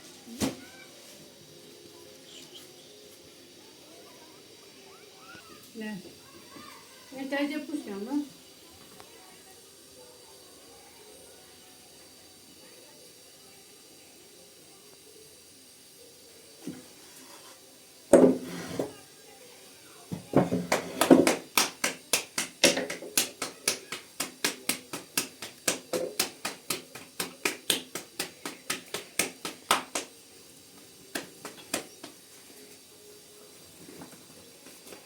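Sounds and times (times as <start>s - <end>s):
sharp slaps on dough: 20.2s - 30.1s, 31.1s - 32.2s.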